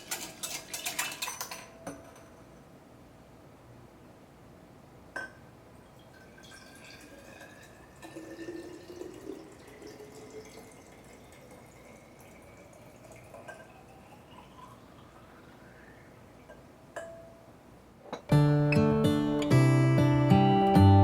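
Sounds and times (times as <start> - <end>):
liquid pouring into glass: 5.9 - 16.6.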